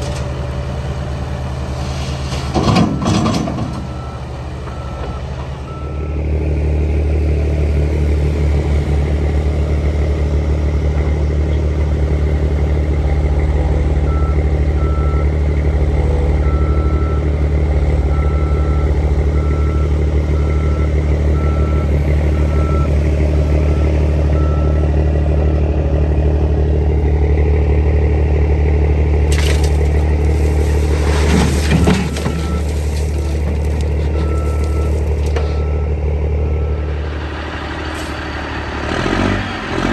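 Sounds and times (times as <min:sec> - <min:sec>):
heavy diesel machinery running: 0:00.0 - 0:39.9
scraping noise: 0:30.1 - 0:35.5
backup alarm beeping: 0:31.8 - 0:36.9.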